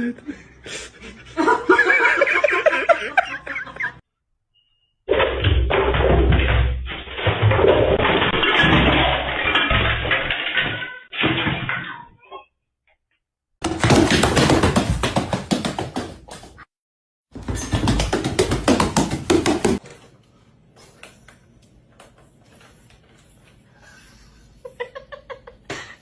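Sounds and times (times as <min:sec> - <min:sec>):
rapid knocking: 0:17.4 - 0:19.8.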